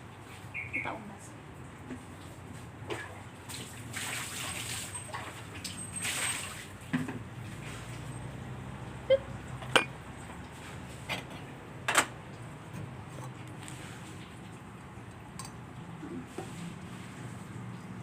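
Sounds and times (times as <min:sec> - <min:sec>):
water splashing in a bowl: 0:01.9 - 0:08.1
dishware clinks: 0:09.6 - 0:10.0.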